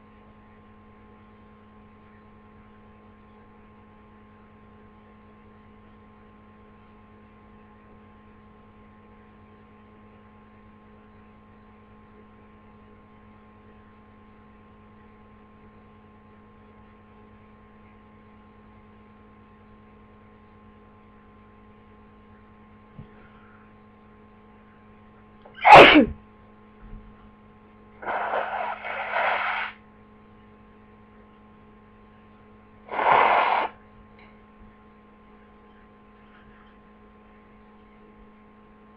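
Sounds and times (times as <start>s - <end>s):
electrical hum: 0.0s - 38.9s
short noisy bursts: 25.5s - 26.1s, 28.0s - 29.8s, 32.8s - 33.8s
person sneezing: 25.5s - 26.2s, 28.0s - 29.7s, 32.9s - 33.7s.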